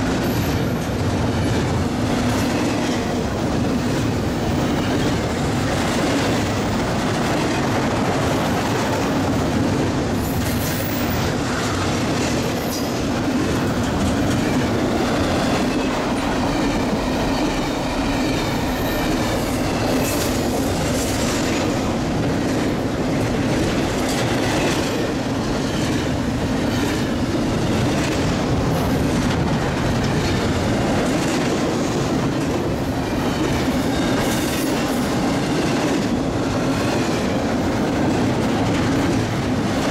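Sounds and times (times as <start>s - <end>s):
train cars rumbling past: 0.0s - 39.9s.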